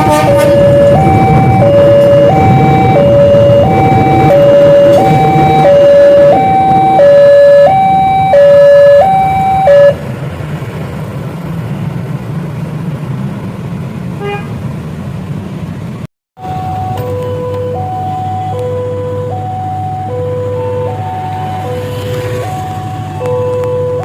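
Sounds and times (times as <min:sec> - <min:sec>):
level crossing two-tone alarm: 0:00.0 - 0:10.0.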